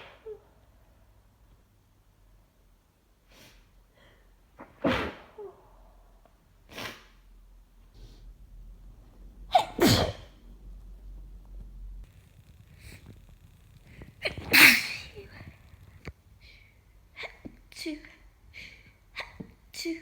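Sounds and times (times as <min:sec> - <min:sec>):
person sneezing: 0:06.7 - 0:07.2, 0:09.5 - 0:10.3, 0:14.2 - 0:15.6
faint breaths: 0:12.0 - 0:17.2.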